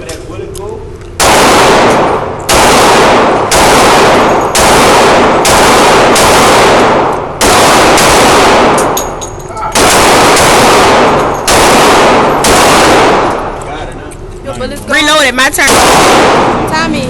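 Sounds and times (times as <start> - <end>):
pistol shots echoing: 1.2 - 13.6, 15.6 - 16.7.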